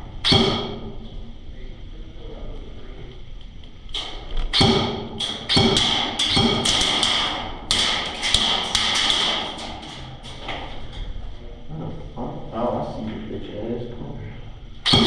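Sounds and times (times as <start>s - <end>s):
airsoft guns firing: 4.0s - 10.0s.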